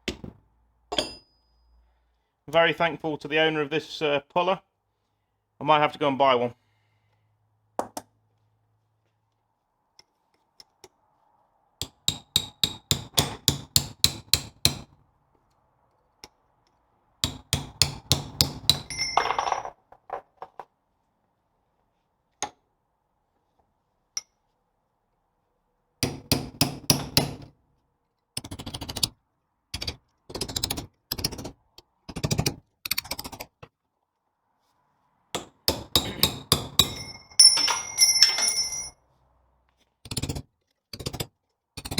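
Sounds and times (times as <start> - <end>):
hammer striking steel: 0.9 - 1.4, 11.8 - 14.9, 35.4 - 38.9
metallic ring: 0.9 - 1.8, 18.8 - 19.6, 36.8 - 39.0.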